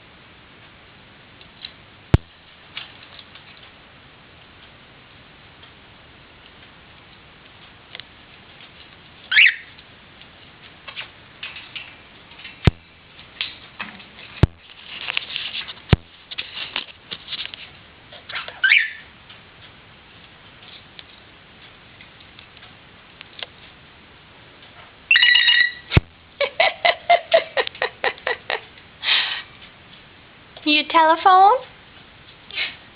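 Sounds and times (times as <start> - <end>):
parrot rising squeaks: 9.3 - 9.7, 18.3 - 19.1, 25.1 - 25.9
parrot chattering and clicking: 9.3 - 9.8, 18.1 - 19.1, 25.1 - 26.0.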